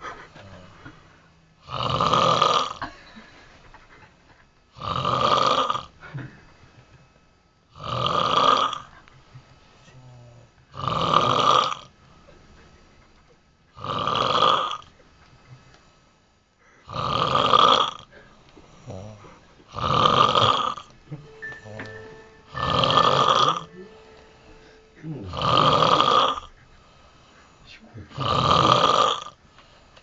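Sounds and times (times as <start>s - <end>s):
person snoring loudly: 1.6s - 2.8s, 4.8s - 5.9s, 10.2s - 11.9s, 13.8s - 14.8s, 16.9s - 18.1s, 18.8s - 20.8s, 22.5s - 24.0s, 25.2s - 26.5s, 28.2s - 29.4s.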